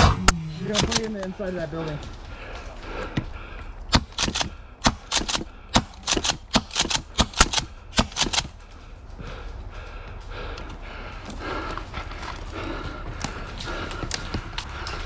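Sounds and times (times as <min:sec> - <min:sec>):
airsoft guns firing: 0:00.0 - 0:01.5, 0:03.9 - 0:08.7.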